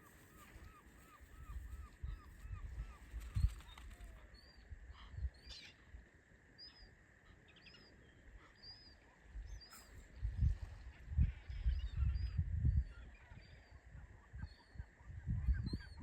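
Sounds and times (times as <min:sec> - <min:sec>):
wind rumbling on microphone: 0:00.0 - 0:05.4, 0:09.3 - 0:16.0.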